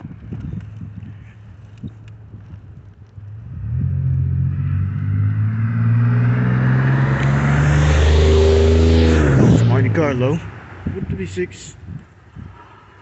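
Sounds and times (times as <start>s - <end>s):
car approaching: 0.3s - 11.8s.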